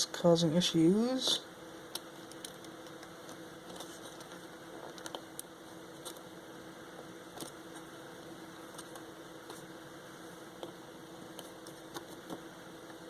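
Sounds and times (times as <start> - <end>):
room hiss and hum: 0.0 - 13.0
small parts clicking and tapping: 1.9 - 3.4, 4.2 - 6.2.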